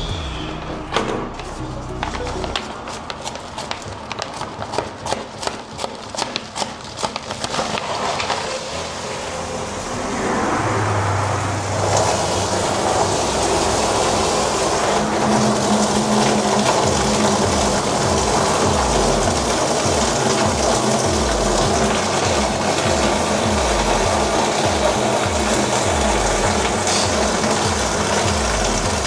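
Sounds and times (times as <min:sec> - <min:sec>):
water gushing into a barrel: 0:02.9 - 0:10.9, 0:11.5 - 0:29.0
rapid clicks and knocks: 0:14.6 - 0:29.0.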